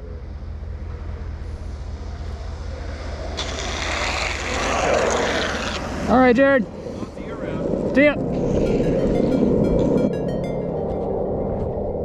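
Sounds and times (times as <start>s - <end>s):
skateboard wheels rolling on asphalt: 2.9s - 6.3s.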